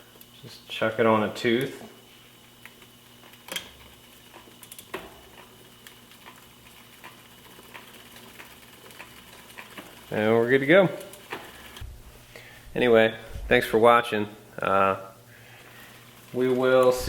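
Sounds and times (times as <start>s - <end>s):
bicycle chain clicking: 2.7s - 11.8s.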